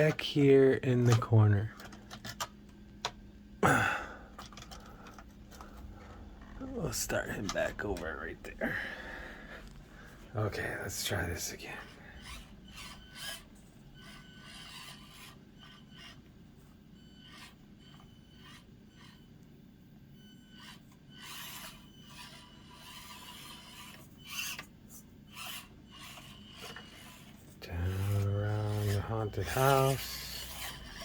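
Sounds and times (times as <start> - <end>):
small electric motor whine: 10.6 - 31.0
toy car scraping over surfaces: 11.1 - 16.2, 17.2 - 19.2, 20.5 - 31.0.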